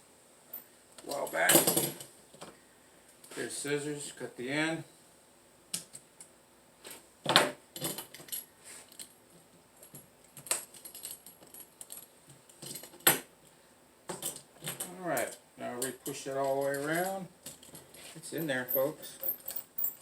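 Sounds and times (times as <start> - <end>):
hand tools clicking and clinking: 14.1 - 20.0.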